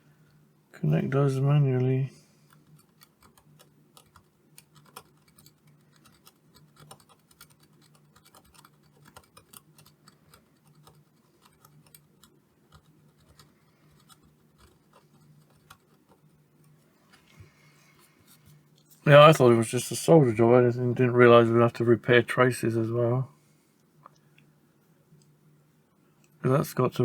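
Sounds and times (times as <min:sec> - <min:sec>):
hand tools scratching and ticking: 0:02.5 - 0:16.3.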